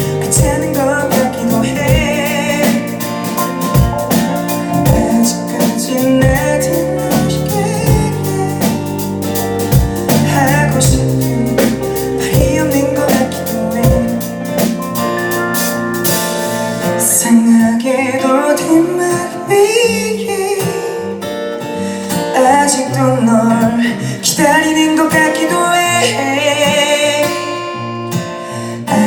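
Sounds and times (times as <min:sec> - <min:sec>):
person singing: 0:00.0 - 0:15.7, 0:17.0 - 0:21.2, 0:22.2 - 0:29.0
live band playing: 0:00.0 - 0:22.8.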